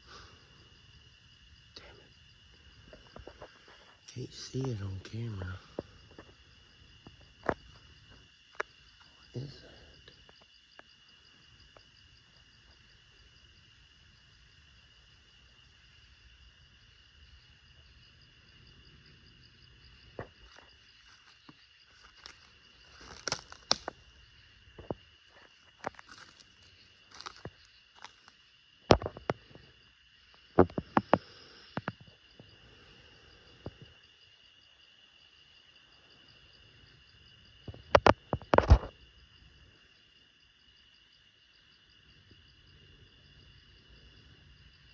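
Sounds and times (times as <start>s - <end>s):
insects chirring: 0.0s - 44.9s
twigs crackling and snapping: 20.2s - 24.2s, 24.8s - 28.4s.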